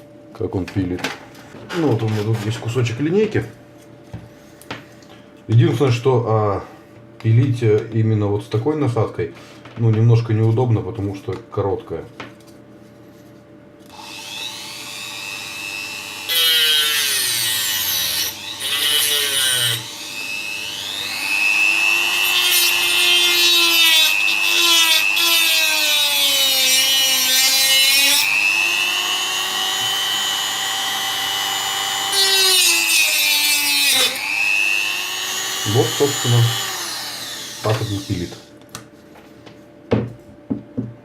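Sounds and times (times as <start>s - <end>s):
rotary tool motor whine: 13.9s - 26.2s, 28.2s - 32.8s, 34.0s - 38.4s
rotary tool sawing rasp: 14.0s - 38.3s.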